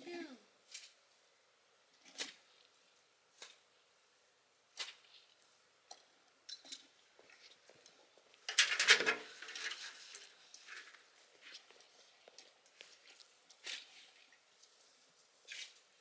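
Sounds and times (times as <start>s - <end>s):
feed bucket clicks and knocks: 8.6s - 10.0s
feed rattling rustle: 8.6s - 10.2s.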